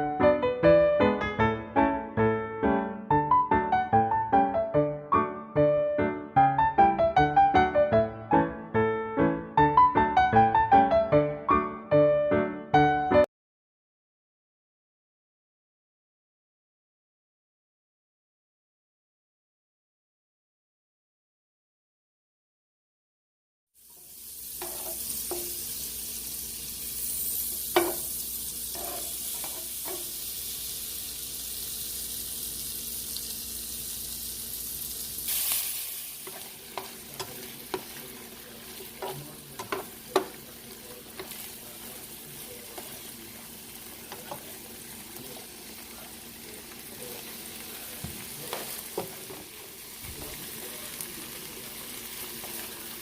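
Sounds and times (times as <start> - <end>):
food sizzling in a pan: 23.8 - 53.0
spatula scraping and knocking pan: 24.5 - 25.6, 27.7 - 30.2, 36.2 - 44.6, 48.0 - 50.2.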